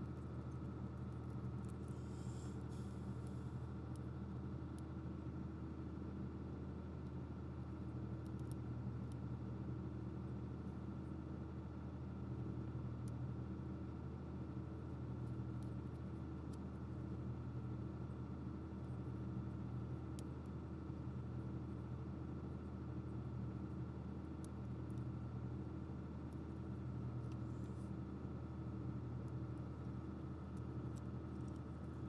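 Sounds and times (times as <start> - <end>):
low equipment hum: 0.0 - 32.0
faint light ticks: 2.8 - 4.1, 8.2 - 9.2, 13.0 - 13.2, 15.2 - 16.7, 20.1 - 20.6, 30.5 - 32.0.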